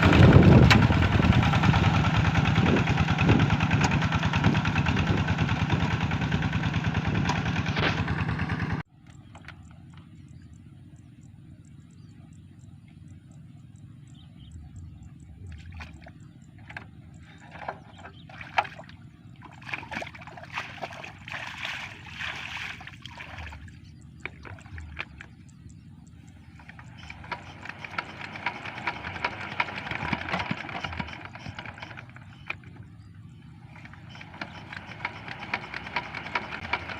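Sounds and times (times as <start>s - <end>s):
diesel engine running: 0.0s - 36.9s
loud clicking noise: 26.3s - 32.7s, 33.8s - 36.9s.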